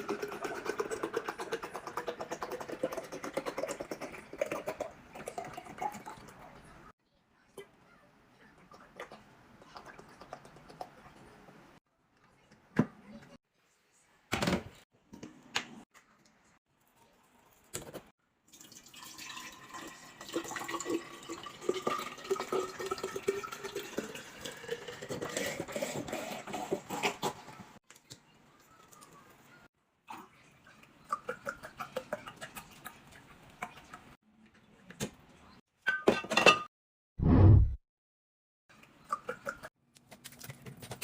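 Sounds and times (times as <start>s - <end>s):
liquid pouring into container: 0.0s - 6.6s, 18.5s - 26.0s.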